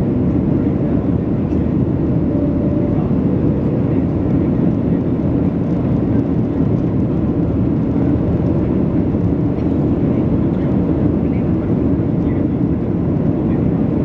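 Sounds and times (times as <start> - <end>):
airliner cabin jet engine rumble: 0.0 - 14.0.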